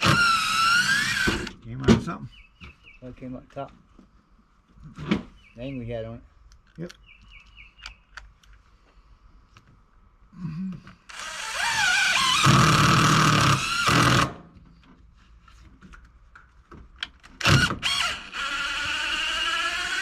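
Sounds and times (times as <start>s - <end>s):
power drill driving screw: 0.0s - 1.6s, 11.1s - 14.4s, 17.2s - 20.0s.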